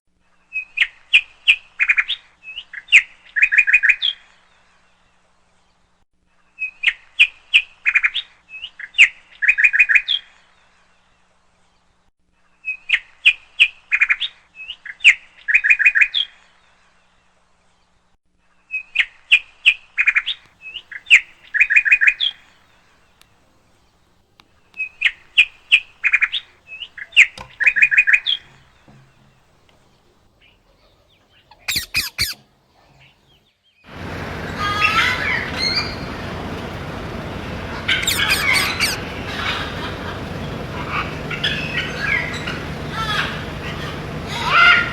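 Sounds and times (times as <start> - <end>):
parrot chirps and trills: 30.4 - 33.4, 34.0 - 44.9.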